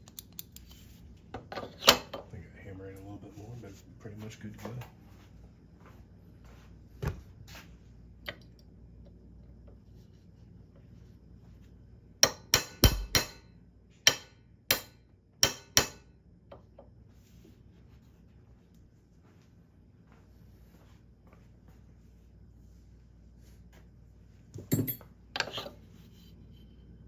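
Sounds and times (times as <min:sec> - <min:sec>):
hammer tapping metal punch: 0:12.2 - 0:16.1.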